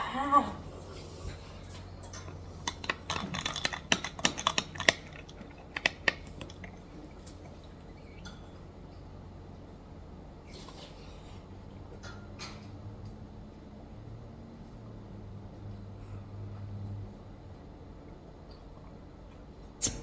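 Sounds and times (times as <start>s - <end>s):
low steady hum: 0.0s - 20.0s
utensils and dishes clinking: 1.3s - 8.6s.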